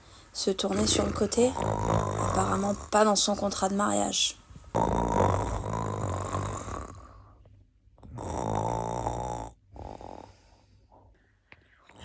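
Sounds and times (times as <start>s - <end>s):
man snoring: 0.6s - 3.1s, 4.7s - 7.4s, 8.0s - 10.6s.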